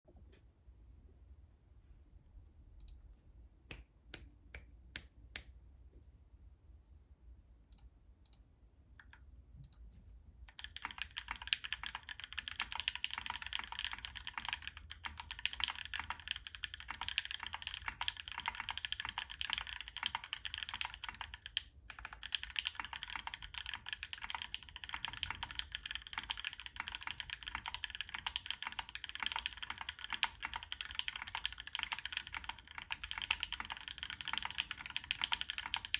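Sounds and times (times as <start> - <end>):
mechanical keyboard typing: 10.5 - 35.9.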